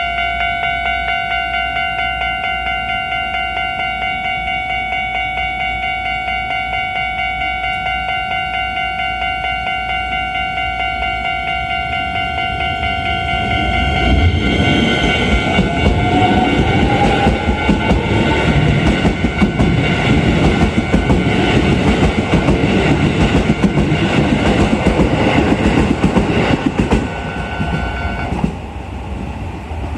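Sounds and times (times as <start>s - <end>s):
level-crossing warning bell: 0.0s - 28.4s
electric train accelerating whine: 0.0s - 29.9s
train wheels rumbling on rails: 10.6s - 29.9s.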